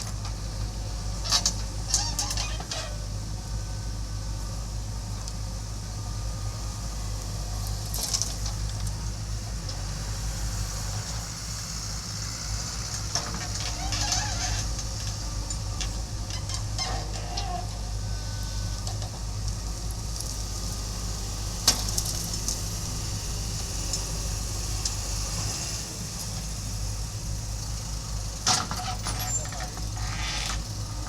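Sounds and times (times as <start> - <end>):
diesel engine running: 0.0 - 31.0
clatters and scrapes: 1.2 - 3.0, 13.1 - 17.7, 28.5 - 30.6.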